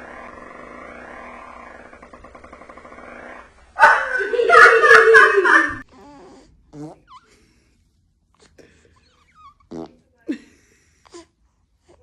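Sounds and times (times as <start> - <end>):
baby farting: 6.7 - 7.2, 9.6 - 10.1.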